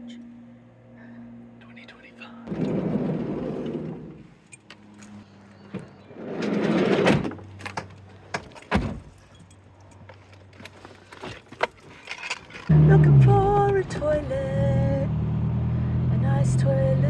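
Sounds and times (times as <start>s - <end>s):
van sliding door rolling: 2.5s - 4.2s, 5.7s - 7.8s.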